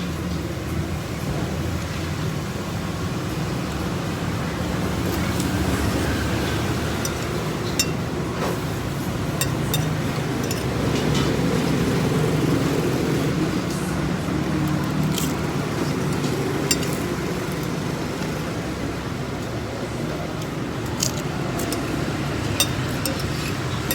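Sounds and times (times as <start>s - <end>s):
road traffic rumble: 0.0s - 23.9s
light clicks and clinks: 5.1s - 8.7s, 9.4s - 11.9s, 14.5s - 18.4s, 20.4s - 23.9s.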